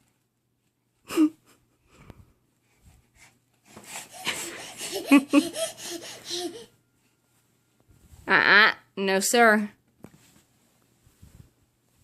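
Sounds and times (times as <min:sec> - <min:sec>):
toddler huffing and gasping: 0:03.7 - 0:06.7.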